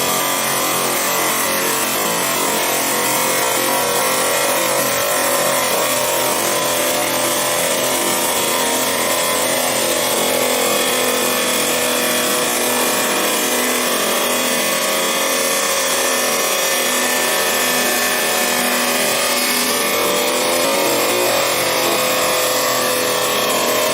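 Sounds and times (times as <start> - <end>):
chop saw cutting steel: 0.0 - 23.9.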